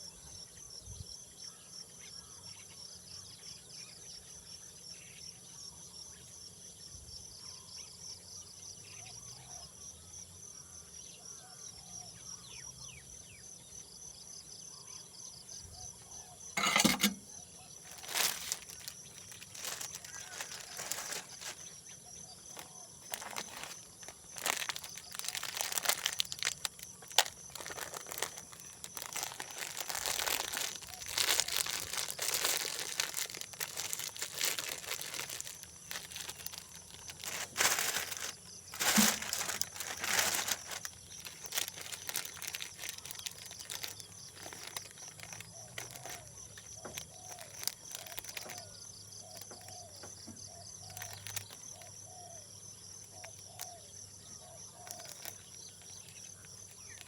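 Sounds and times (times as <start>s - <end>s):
insects chirring: 12.4s - 57.0s
crinkling and rustling handling: 16.6s - 52.0s, 54.8s - 57.0s.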